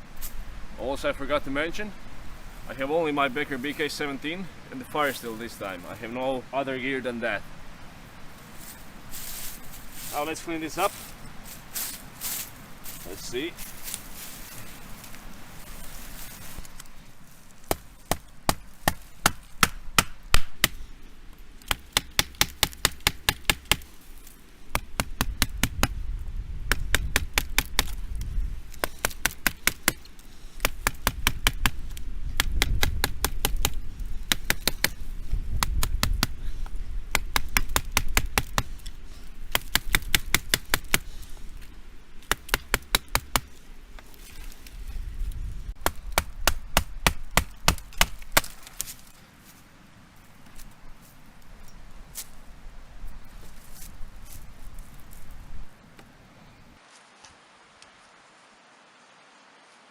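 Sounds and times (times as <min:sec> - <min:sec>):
knife chopping wood: 0:17.6 - 0:20.8, 0:21.6 - 0:23.9, 0:24.7 - 0:26.0, 0:26.6 - 0:28.0, 0:28.7 - 0:38.9, 0:39.5 - 0:41.2, 0:42.2 - 0:43.6, 0:45.8 - 0:49.0.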